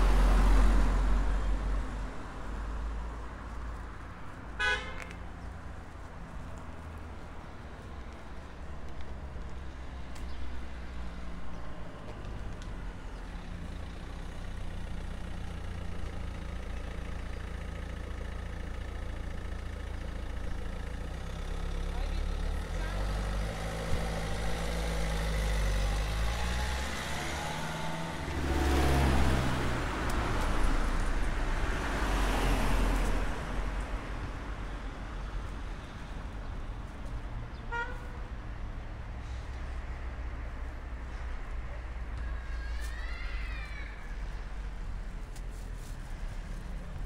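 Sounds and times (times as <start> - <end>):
vehicle engines running: 0.0 - 47.0
vehicle passing close: 22.8 - 33.9.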